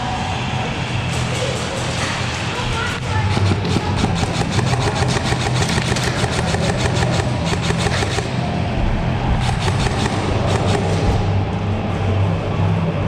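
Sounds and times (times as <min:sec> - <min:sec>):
steady low hum: 0:00.0 - 0:13.0
airsoft gun firing bursts: 0:03.3 - 0:08.6, 0:09.4 - 0:11.4.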